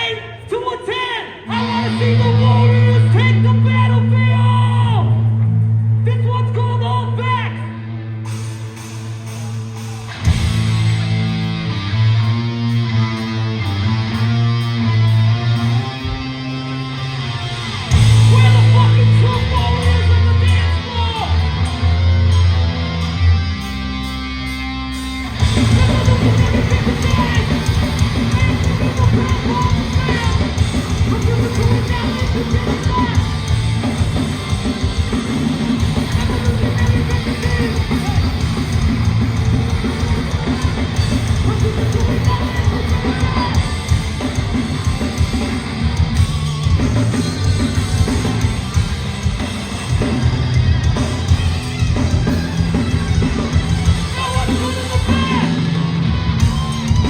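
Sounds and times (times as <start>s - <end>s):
distorted electric guitars: 0.0s - 57.0s
bass guitar: 1.4s - 57.0s
pounding drum kit: 8.2s - 22.7s, 25.1s - 57.0s.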